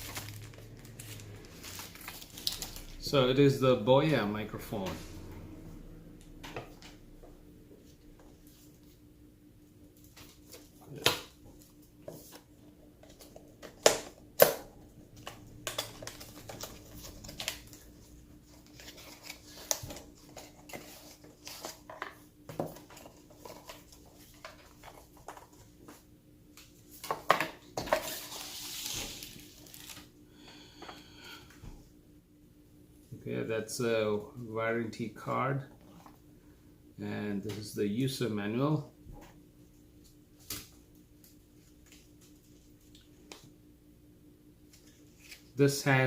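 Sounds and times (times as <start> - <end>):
packaging rustle: 0.0 - 3.0, 28.0 - 30.1
faint steady hum: 0.0 - 46.0.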